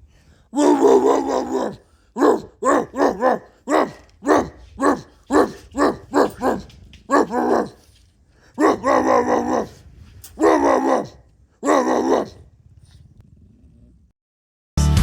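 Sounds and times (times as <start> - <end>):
dog barking: 0.6 - 7.9, 8.6 - 9.8, 10.4 - 12.4.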